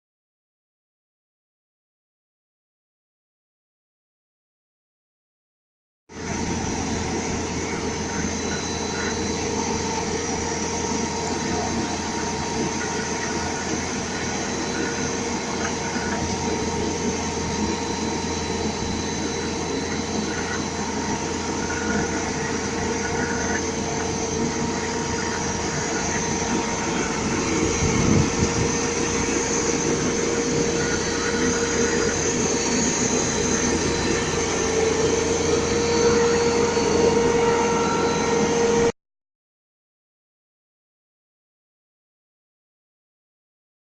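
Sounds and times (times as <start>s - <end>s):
loader engine running: 6.1s - 38.9s
debris blower air rush: 9.2s - 38.9s.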